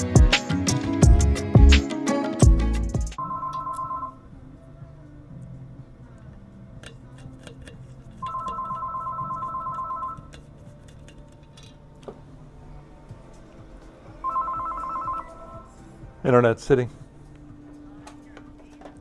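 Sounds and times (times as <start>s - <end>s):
telephone ringing: 3.2s - 4.2s, 8.2s - 10.3s, 14.2s - 15.7s.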